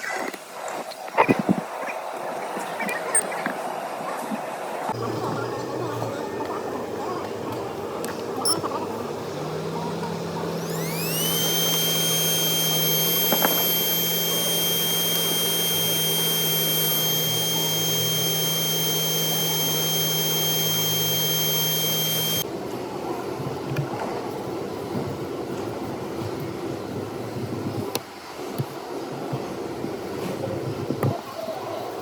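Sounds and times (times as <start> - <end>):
small motor whining: 9.4 - 22.4
low steady hum: 10.5 - 22.4.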